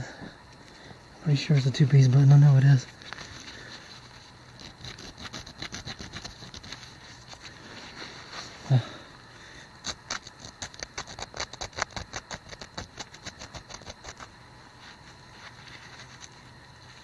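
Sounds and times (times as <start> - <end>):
fingers scratching metal: 4.6 - 7.4, 9.8 - 14.3.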